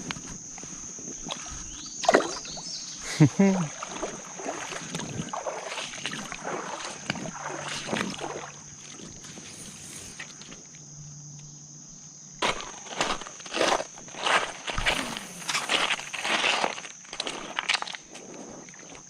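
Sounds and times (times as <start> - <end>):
creek water splashing: 1.2 - 10.4, 12.4 - 18.0.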